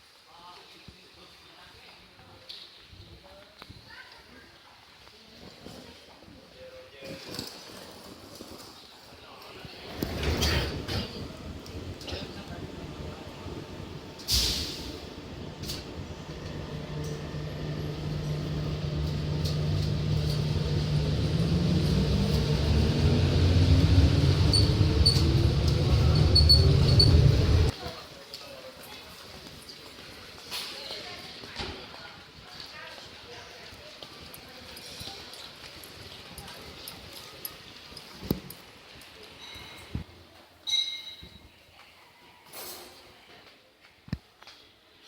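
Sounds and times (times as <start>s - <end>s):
steady background hum: 10.0s - 27.7s
vehicle motor speeding up: 15.5s - 27.7s
whine climbing in pitch: 18.5s - 27.7s.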